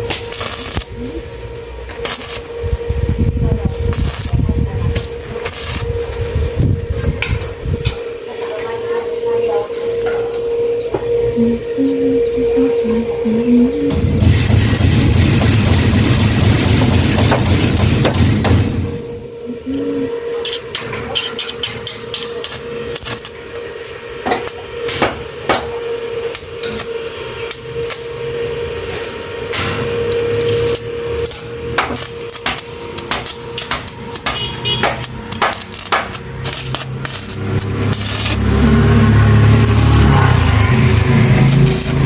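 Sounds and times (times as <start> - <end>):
low motor noise: 0.0 - 42.0
steady hum: 0.0 - 42.0
hammer striking metal: 13.9 - 19.0, 24.2 - 25.8, 29.5 - 40.6.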